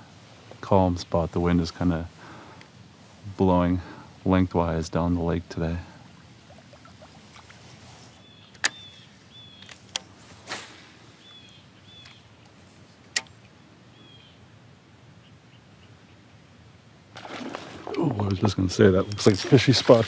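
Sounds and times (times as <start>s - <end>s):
outdoor background noise: 0.0s - 20.0s
bird chirps: 8.2s - 9.7s, 11.2s - 12.4s, 13.6s - 14.4s.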